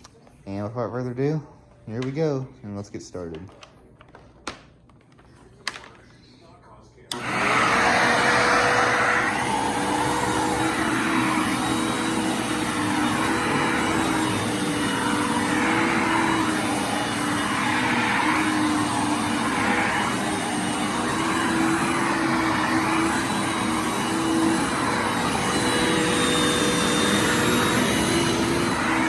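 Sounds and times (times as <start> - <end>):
upright vacuum motor whining: 7.1 - 29.0.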